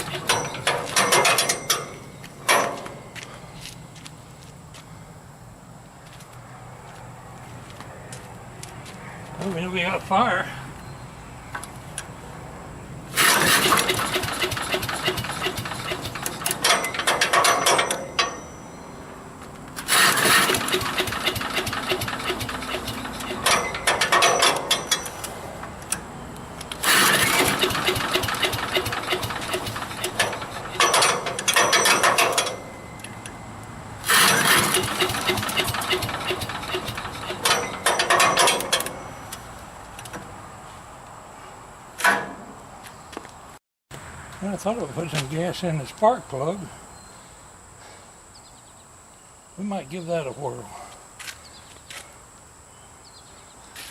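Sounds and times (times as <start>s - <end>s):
engine cranking without starting: 0.0s - 1.9s, 13.1s - 18.1s, 19.8s - 26.0s, 26.7s - 32.7s, 34.0s - 39.1s.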